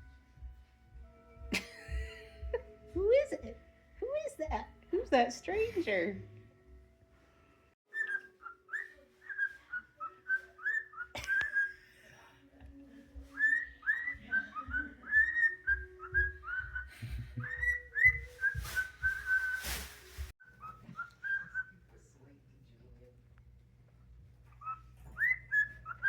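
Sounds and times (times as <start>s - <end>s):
bird whistling chirpy notes: 7.9s - 11.8s, 13.3s - 19.8s, 24.6s - 26.0s
short rustle: 18.2s - 20.8s.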